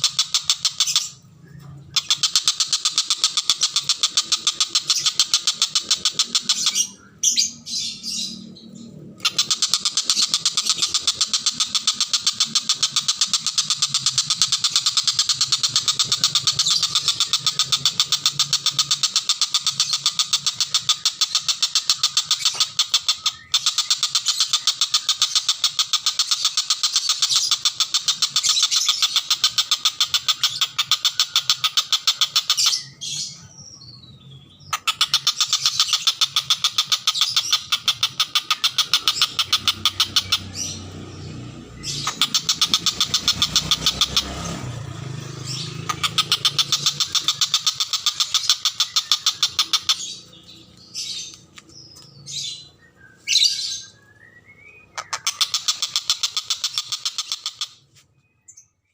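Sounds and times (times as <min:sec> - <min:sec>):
kingfisher chattering rattle: 0:00.0 - 0:01.2, 0:01.9 - 0:07.0, 0:09.2 - 0:33.0, 0:34.7 - 0:41.0, 0:41.7 - 0:52.7, 0:55.0 - 0:57.8.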